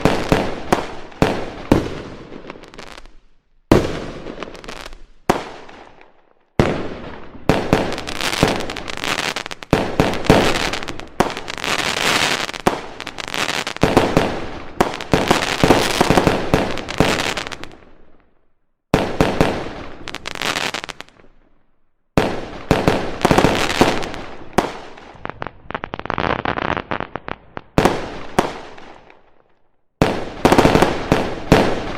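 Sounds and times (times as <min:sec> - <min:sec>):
fireworks crackling: 0:00.0 - 0:03.1, 0:06.7 - 0:17.8, 0:19.0 - 0:21.2, 0:22.2 - 0:29.2, 0:30.1 - 0:31.9
fireworks banging: 0:06.6 - 0:17.8, 0:22.2 - 0:29.0.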